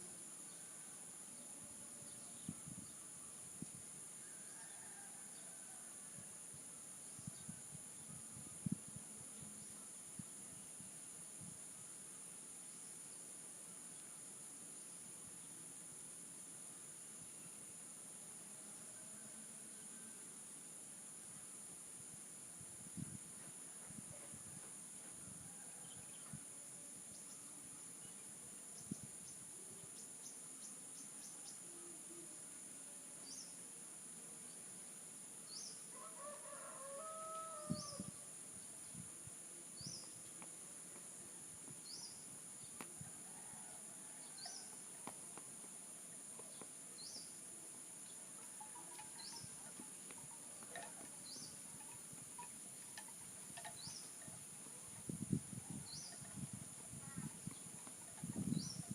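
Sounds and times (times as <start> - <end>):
high insect drone: 0.0 - 58.9
distant rooster crowing: 4.2 - 6.3, 35.9 - 38.2, 43.0 - 44.8.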